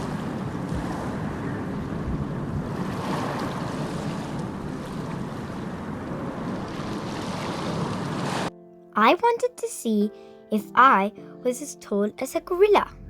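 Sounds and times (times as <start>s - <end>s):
rushing wash of noise: 0.0s - 8.5s.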